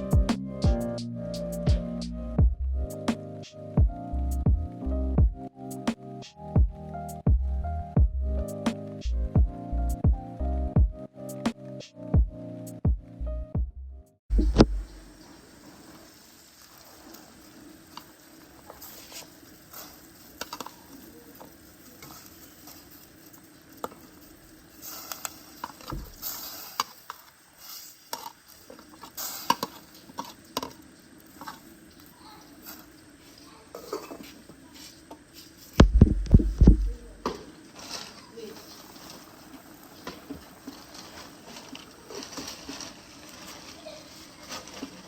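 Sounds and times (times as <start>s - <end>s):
low thuds: 1.7s - 2.8s, 6.6s - 8.4s, 12.2s - 15.2s, 35.8s - 37.3s.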